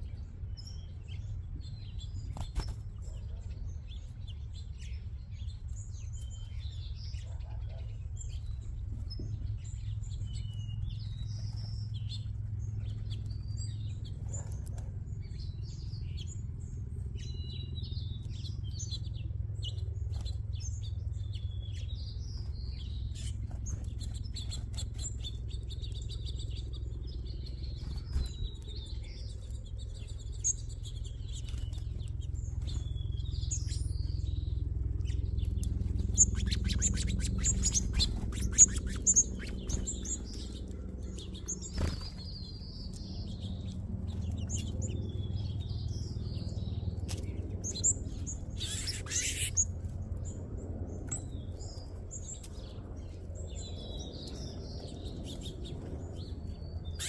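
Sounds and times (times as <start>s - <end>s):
small birds chirping: 0.0s - 57.0s
steady low rumble: 0.0s - 57.0s
bird wingbeats: 35.0s - 42.6s.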